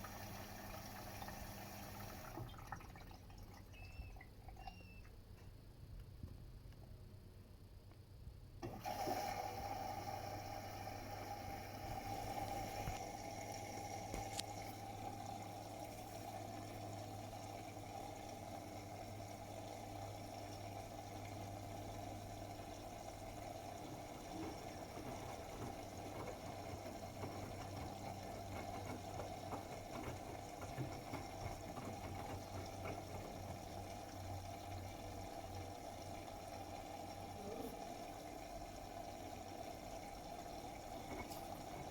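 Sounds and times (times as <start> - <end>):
water running into machine: 0.0 - 5.0, 8.6 - 41.9
washing machine inlet valve opening: 22.4 - 35.4.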